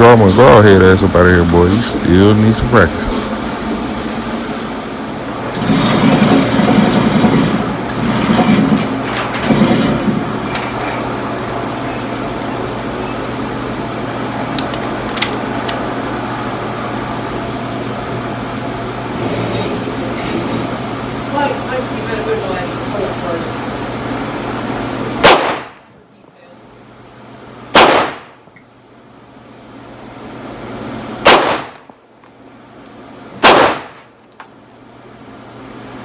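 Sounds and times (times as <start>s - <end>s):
rushing noise: 0.0s - 21.2s
low mechanical hum: 0.0s - 36.0s.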